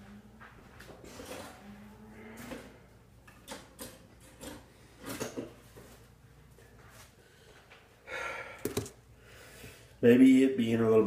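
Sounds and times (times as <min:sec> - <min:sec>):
knocks and clicks of objects handled: 0:02.4 - 0:05.9, 0:08.6 - 0:09.0.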